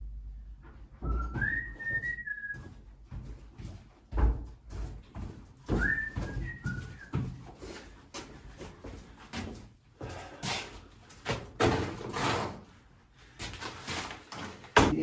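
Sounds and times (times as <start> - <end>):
person whistling: 1.0 - 2.8, 5.7 - 7.3.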